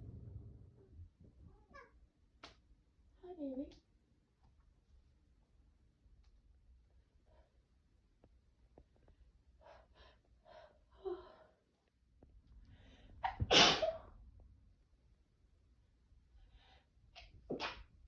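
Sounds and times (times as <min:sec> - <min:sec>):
woman sneezing loudly: 0:13.2 - 0:14.1.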